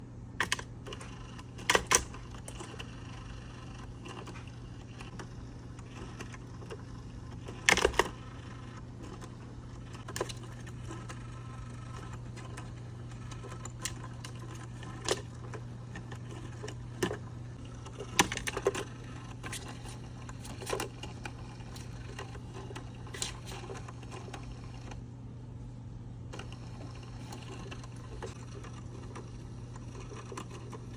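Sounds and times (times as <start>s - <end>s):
steady low hum: 0.0s - 30.9s
cat toy clicking and clattering: 0.4s - 17.2s, 17.8s - 24.9s.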